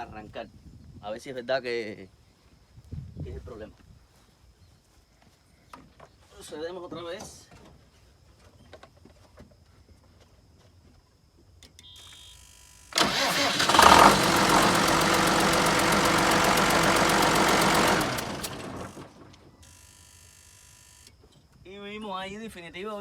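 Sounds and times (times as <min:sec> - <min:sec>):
tractor diesel engine starting and running: 0:12.9 - 0:19.5.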